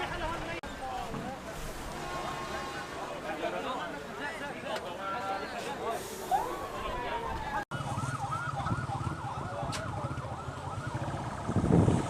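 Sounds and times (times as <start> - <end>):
emergency vehicle siren: 7.7 - 12.0.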